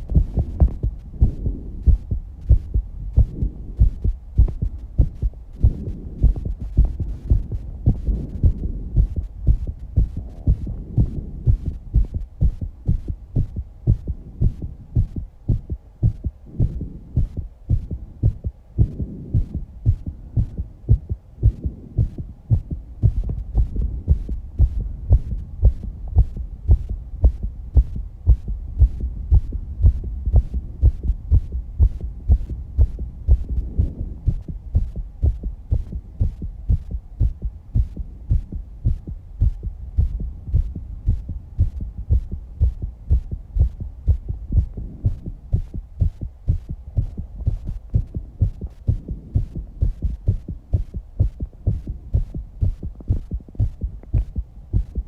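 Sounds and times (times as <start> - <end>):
fast heartbeat thumps: 0.0 - 55.0.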